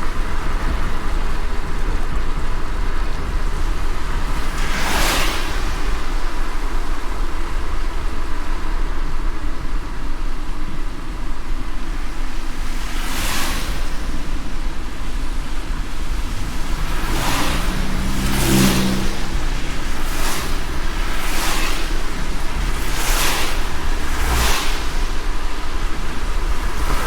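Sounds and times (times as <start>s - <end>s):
car road rumble: 0.0s - 27.0s
rain and tyre spray hiss: 0.0s - 27.0s
whooshing: 12.3s - 27.0s.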